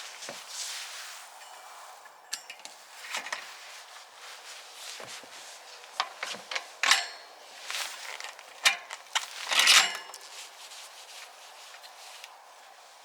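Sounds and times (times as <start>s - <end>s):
metal bike parts clinking: 1.4s - 3.5s, 6.0s - 10.3s.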